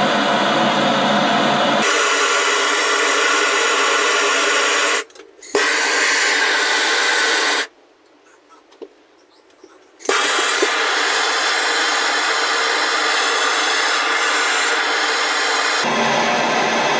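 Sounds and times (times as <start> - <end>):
soldering torch hissing: 1.8 - 7.7, 10.0 - 15.9.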